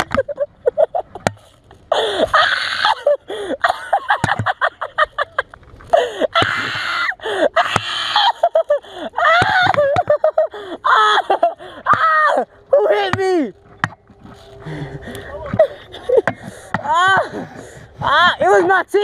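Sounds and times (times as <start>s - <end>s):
heavy breathing: 3.3s - 3.6s, 10.5s - 10.9s, 11.6s - 11.9s, 14.2s - 18.2s.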